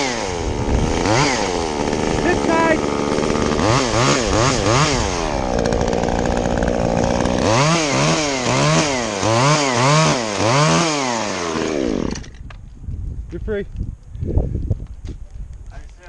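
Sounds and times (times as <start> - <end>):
chainsaw revving: 0.0 - 12.4.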